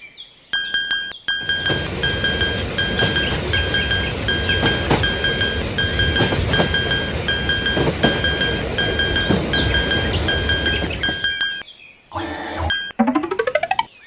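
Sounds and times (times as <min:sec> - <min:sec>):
crossing bell ringing: 0:00.6 - 0:11.6, 0:12.2 - 0:13.0
passing train wheel clacks: 0:00.6 - 0:11.6.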